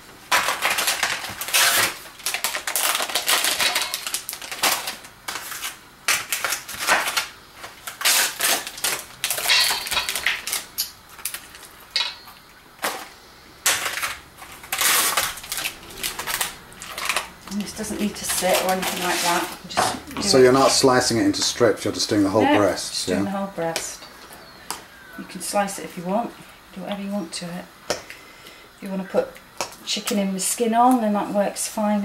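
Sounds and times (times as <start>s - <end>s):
bowl and utensil clinking: 12.0s - 12.4s.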